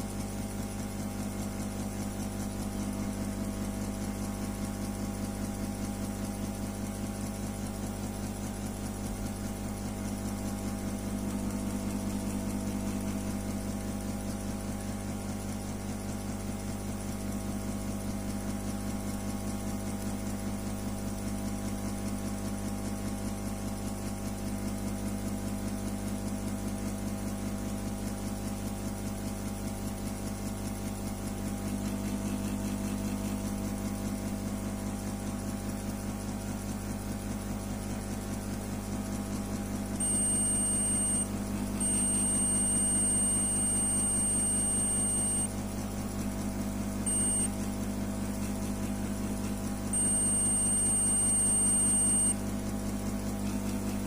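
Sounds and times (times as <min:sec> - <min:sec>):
high electronic beep: 0:40.0 - 0:45.5, 0:47.1 - 0:47.6, 0:50.0 - 0:52.4
low electrical hum: 0:40.0 - 0:45.7, 0:46.4 - 0:52.4.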